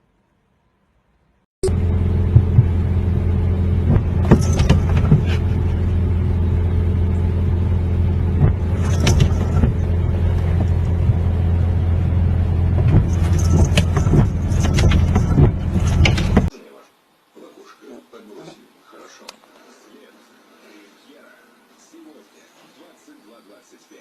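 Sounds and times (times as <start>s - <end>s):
low hum: 1.6s - 16.5s
sharp clicks and knocks: 3.9s - 5.7s, 8.4s - 11.4s, 12.7s - 16.5s.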